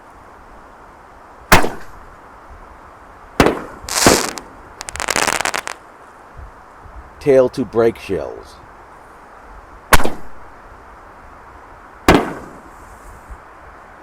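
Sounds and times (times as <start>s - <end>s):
firework shell booms: 3.4s - 5.8s
firework hiss: 3.6s - 5.8s
rapid crackle of small pops: 3.9s - 5.8s.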